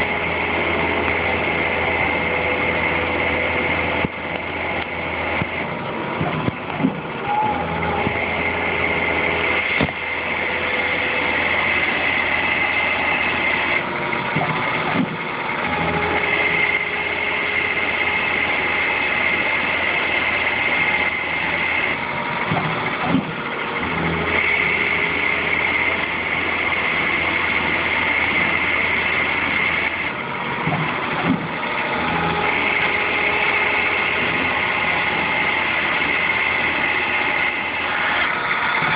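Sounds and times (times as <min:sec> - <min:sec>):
lathe machine whine: 0:00.0 - 0:38.9.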